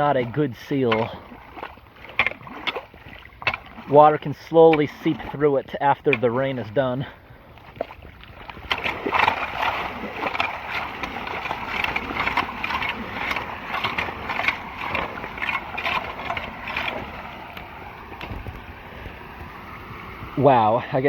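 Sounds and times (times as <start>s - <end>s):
splashing in floodwater: 0.0s - 20.9s
running water: 0.0s - 21.0s.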